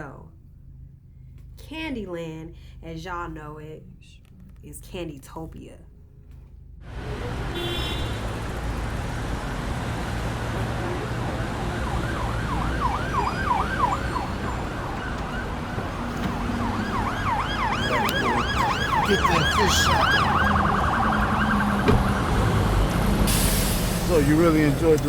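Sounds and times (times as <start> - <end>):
street traffic rumble: 0.0 - 25.0
emergency siren yelping: 6.9 - 23.5.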